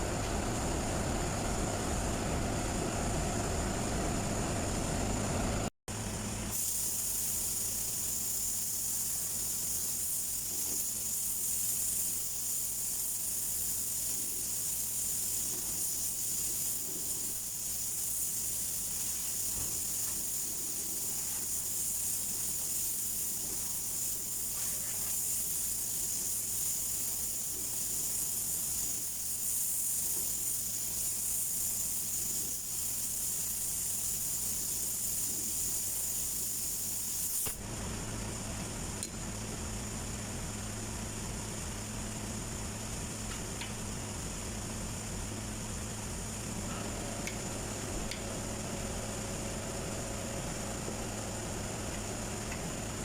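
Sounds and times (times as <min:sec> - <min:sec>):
air tool hissing: 0:06.0 - 0:37.6.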